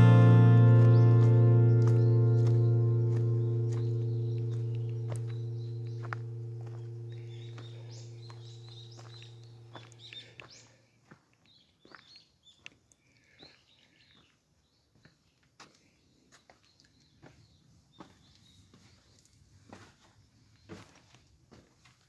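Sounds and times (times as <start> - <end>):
deep ringing bell-like tone: 0.0 - 9.8
birds chirping: 0.0 - 10.2.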